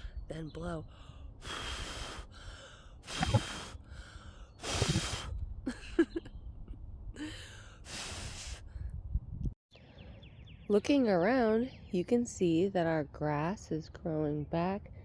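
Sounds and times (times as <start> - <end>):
person blowing long puffs: 1.4 - 5.4.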